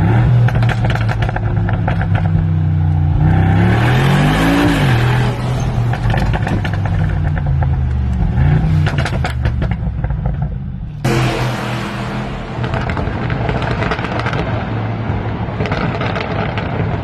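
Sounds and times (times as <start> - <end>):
exhaust pops and crackles: 0.0 - 3.1, 5.8 - 11.1, 12.5 - 17.0
car engine revving: 0.0 - 17.0.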